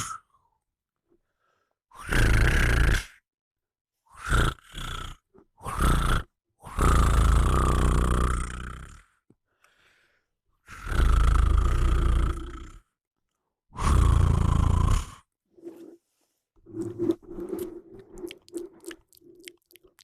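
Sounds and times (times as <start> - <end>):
person snoring: 1.9 - 3.2, 4.1 - 9.2, 10.6 - 12.9, 13.7 - 15.3.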